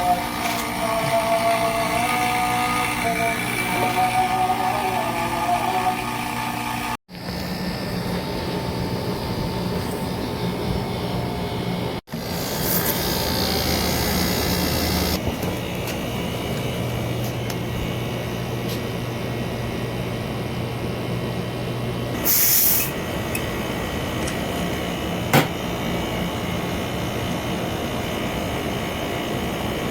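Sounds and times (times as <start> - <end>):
gas hissing: 12.1 - 15.2, 22.2 - 26.2
air conditioner humming: 13.0 - 29.9.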